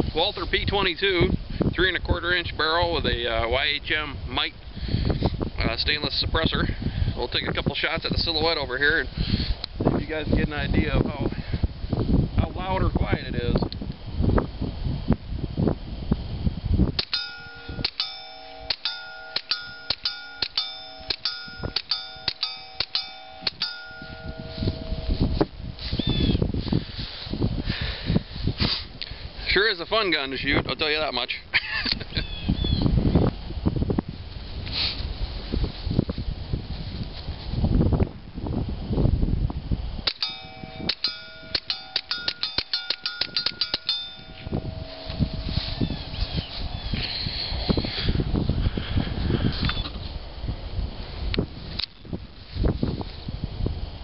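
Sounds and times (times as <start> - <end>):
bullet clanging on steel plate: 17.0 - 25.0, 40.1 - 46.1
low rumbling noise: 44.0 - 49.5.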